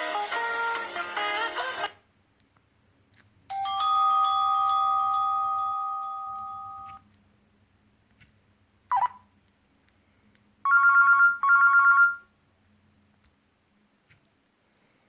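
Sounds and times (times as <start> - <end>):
electronic telephone bell ring: 3.5 - 7.0, 10.7 - 12.2
phone ringtone notes: 3.5 - 7.0, 10.7 - 12.2.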